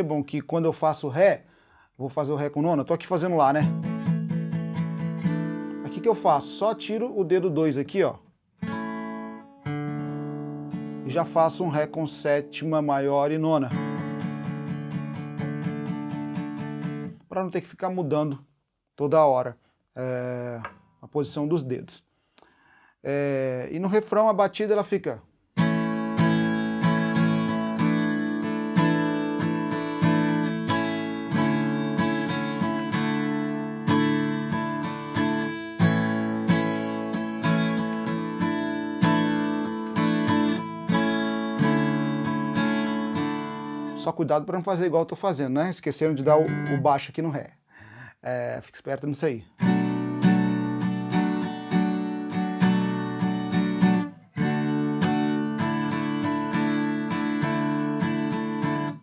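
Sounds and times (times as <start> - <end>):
acoustic guitar strumming: 3.6 - 7.2, 8.6 - 17.2, 25.6 - 44.2, 46.3 - 47.0, 49.6 - 59.0.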